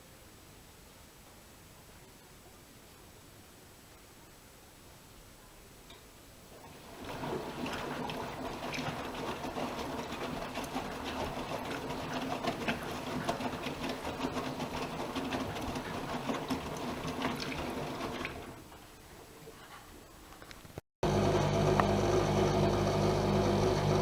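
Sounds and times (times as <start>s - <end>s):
water and laundry sloshing: 6.5s - 20.1s
washing machine drum motor: 6.6s - 18.8s, 21.0s - 24.0s.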